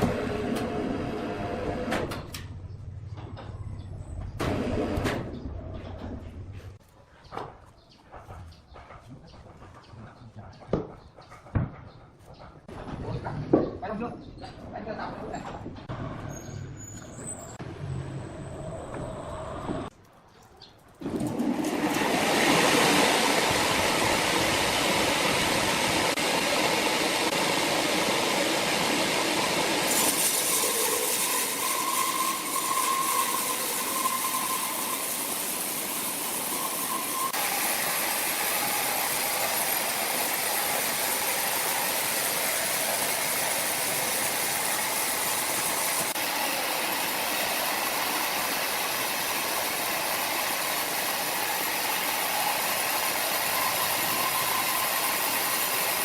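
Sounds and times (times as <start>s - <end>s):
sawmill saw running: 21.0s - 56.0s.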